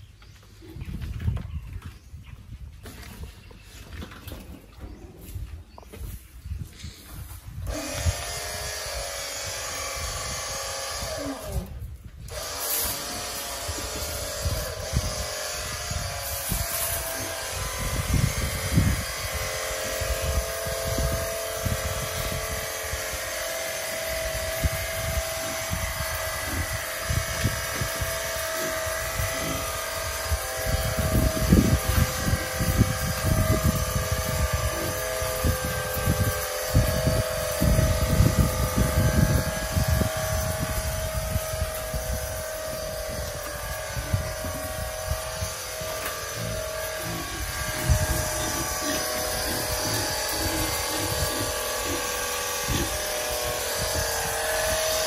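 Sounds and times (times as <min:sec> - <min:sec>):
motor running: 0:07.6 - 0:55.0.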